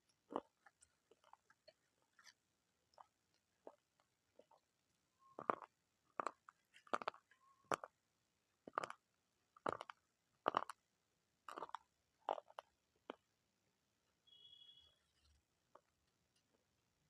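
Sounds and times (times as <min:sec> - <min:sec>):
crunchy food being chewed: 0:00.0 - 0:04.7, 0:05.3 - 0:08.0, 0:08.6 - 0:10.8, 0:11.4 - 0:13.3.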